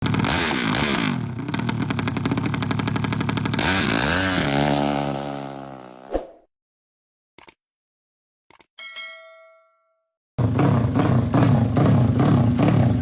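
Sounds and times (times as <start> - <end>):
motorcycle engine revving: 0.0 - 6.1, 10.4 - 13.0.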